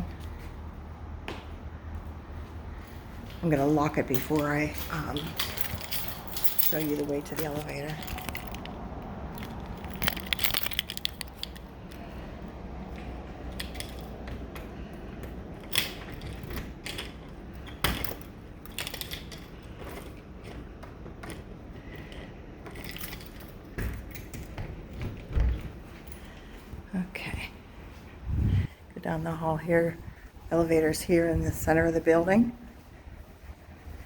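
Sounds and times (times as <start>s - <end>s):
low background hum: 0.0s - 34.0s
keys jangling: 4.0s - 12.2s, 13.4s - 14.4s, 15.6s - 20.6s, 21.2s - 26.6s.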